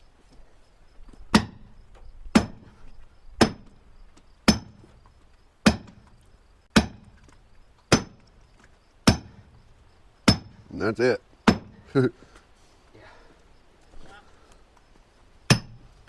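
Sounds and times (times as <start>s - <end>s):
maul striking steel wedge: 1.3s - 1.7s, 2.3s - 2.7s, 3.4s - 3.8s, 4.5s - 4.9s, 5.7s - 6.0s, 6.8s - 7.3s, 7.9s - 8.3s, 9.1s - 9.4s, 10.3s - 10.6s, 11.5s - 11.8s, 15.5s - 15.8s.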